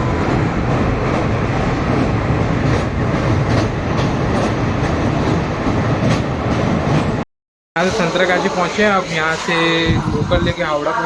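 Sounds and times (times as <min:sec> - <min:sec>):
train rumbling: 0:00.0 - 0:07.2
train wheels clicking on rail joints: 0:00.1 - 0:07.2.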